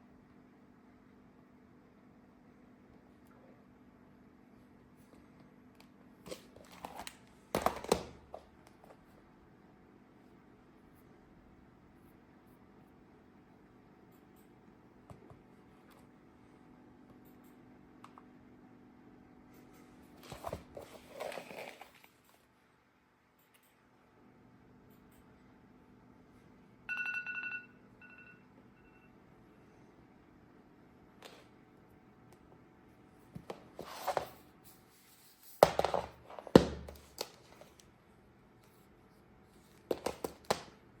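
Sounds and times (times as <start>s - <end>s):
faint steady hum: 0.0s - 41.0s
handling taps and rustles: 39.6s - 40.8s.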